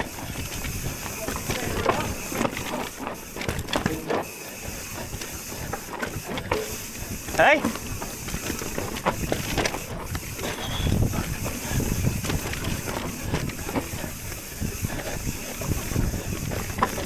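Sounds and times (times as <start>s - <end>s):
bike knocks and rattles: 0.0s - 17.0s
bike tyres rolling over stones: 0.0s - 17.0s
wind on microphone: 4.9s - 17.0s.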